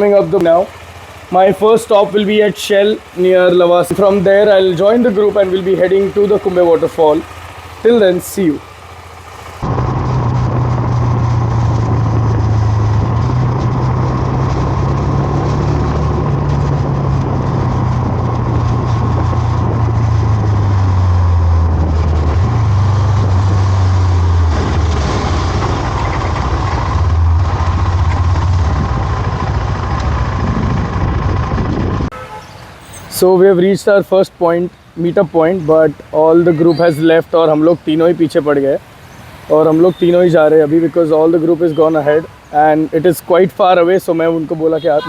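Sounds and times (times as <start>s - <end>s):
motorcycle engine running: 0.0s - 32.4s
wind and road noise: 0.0s - 45.0s.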